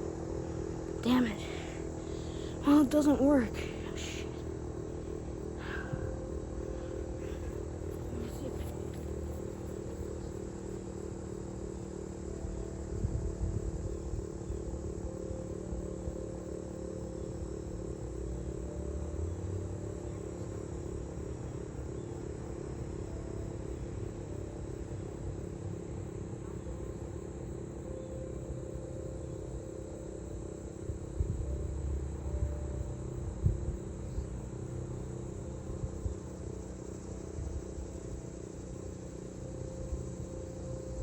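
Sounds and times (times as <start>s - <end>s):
siren wobbling steady tone: 0.0s - 25.3s.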